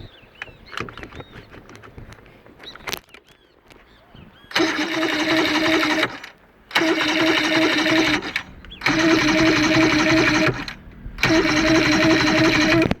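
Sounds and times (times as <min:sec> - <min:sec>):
electric starter cranking outboard: 0:04.5 - 0:13.0.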